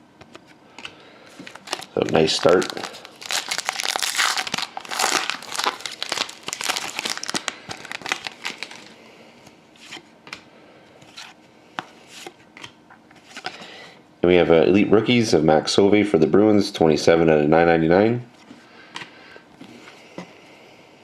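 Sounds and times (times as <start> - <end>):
cards clicking and rustling: 0.2 - 8.9
wrapper tearing and crinkling: 1.5 - 9.0.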